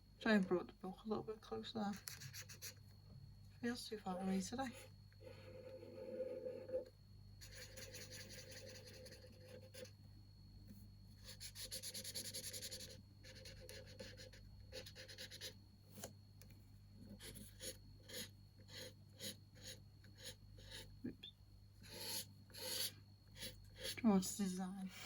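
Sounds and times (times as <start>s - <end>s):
pen scribbling on paper: 2.0s - 2.8s, 5.7s - 9.9s, 11.2s - 15.6s, 17.2s - 20.9s, 21.8s - 24.0s.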